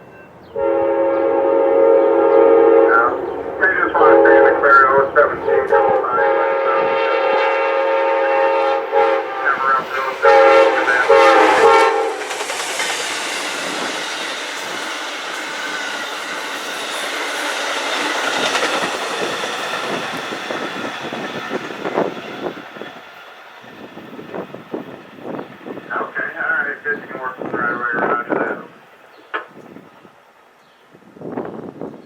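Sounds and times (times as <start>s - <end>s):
locomotive air horn chord: 0.5s - 12.3s
train wheels clattering on rail: 9.8s - 25.8s, 29.0s - 29.8s.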